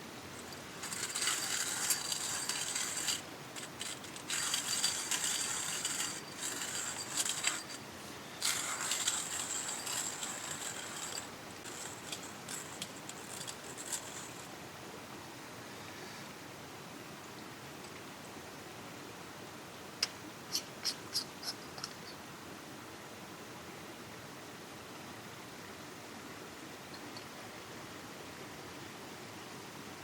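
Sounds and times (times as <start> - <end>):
hand coffee grinder crushing beans: 0.4 - 14.5.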